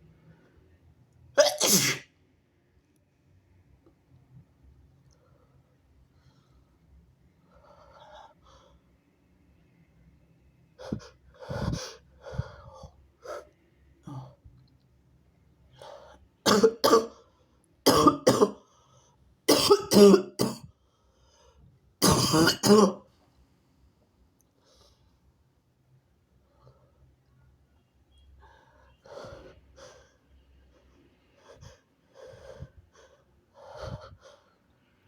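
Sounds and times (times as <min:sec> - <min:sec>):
person coughing harshly: 0:01.4 - 0:02.1, 0:16.5 - 0:17.2, 0:17.8 - 0:18.6, 0:19.5 - 0:20.7, 0:22.0 - 0:23.1.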